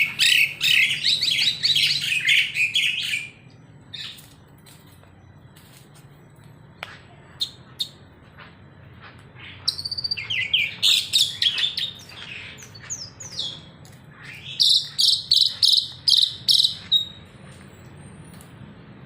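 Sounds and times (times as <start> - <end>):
songbird chirping and whistling: 0.0 - 4.2, 9.6 - 18.2.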